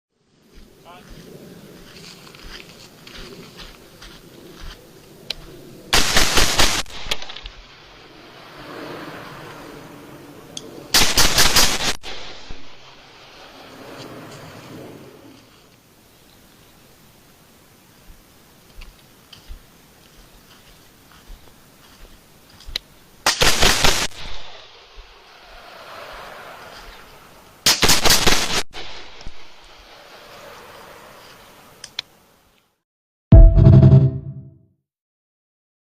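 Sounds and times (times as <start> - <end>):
automatic gunfire burst: 6.0 - 6.9, 11.0 - 12.0, 23.3 - 24.2.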